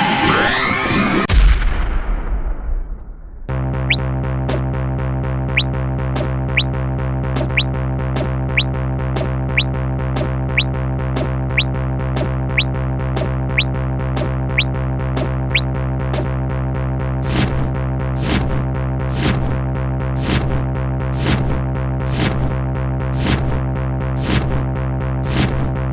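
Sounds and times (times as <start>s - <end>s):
short rising chirp: 5.6s - 6.7s, 7.4s - 13.7s
electronic music: 6.2s - 6.7s, 7.4s - 8.3s, 9.2s - 13.7s, 15.5s - 16.3s.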